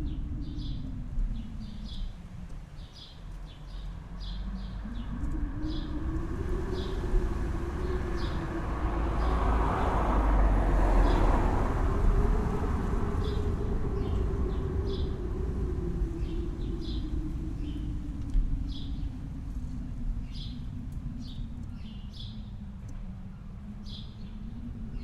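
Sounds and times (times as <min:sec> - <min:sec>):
vehicle passing: 0:04.8 - 0:17.0
birds chirping: 0:12.2 - 0:25.0.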